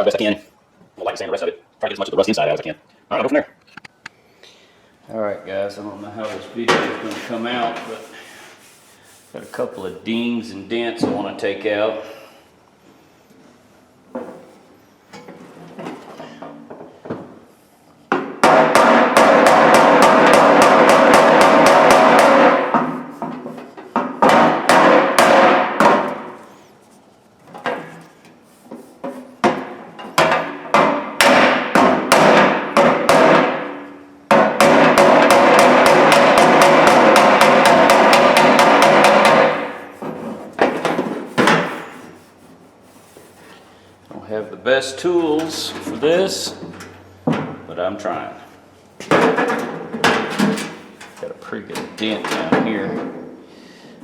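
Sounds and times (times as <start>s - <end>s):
hammer on sheet metal: 18.1s - 26.4s, 29.4s - 41.9s.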